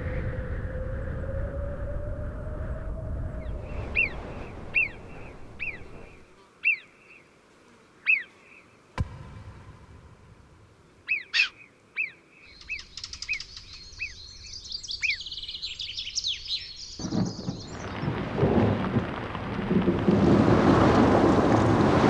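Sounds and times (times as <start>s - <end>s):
rushing noise: 0.0s - 6.2s
birds chirping: 3.3s - 7.3s, 11.1s - 18.2s.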